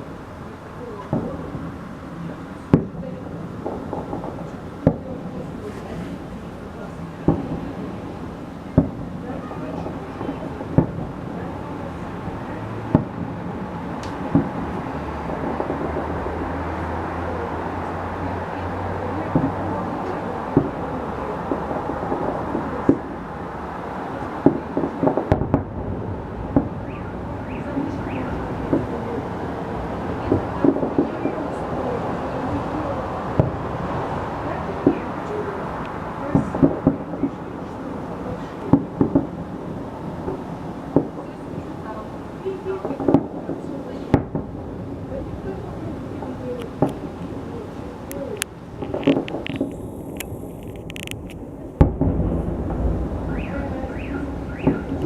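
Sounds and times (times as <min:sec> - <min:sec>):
steady background noise: 0:00.0 - 0:55.0
firework shells bursting with bangs: 0:01.0 - 0:16.6, 0:24.1 - 0:32.0, 0:33.2 - 0:45.1, 0:48.0 - 0:55.0.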